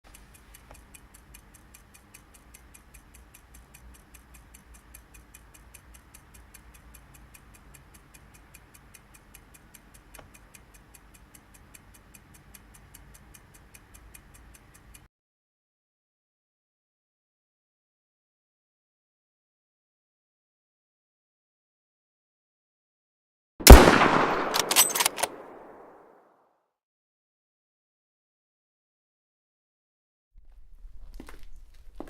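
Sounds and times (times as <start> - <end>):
fast even ticking: 0.0 - 15.1.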